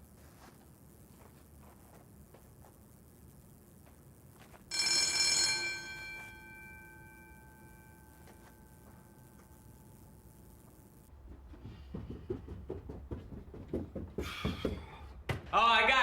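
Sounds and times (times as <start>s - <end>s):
doorbell ringing: 4.7s - 10.4s.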